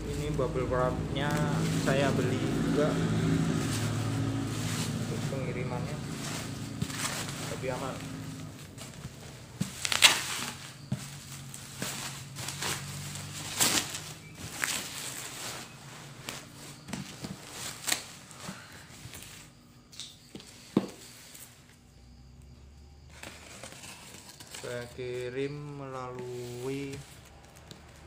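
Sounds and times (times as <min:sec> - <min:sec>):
bubble wrap crackling: 0:00.0 - 0:19.5
packing material rustling: 0:00.0 - 0:19.6.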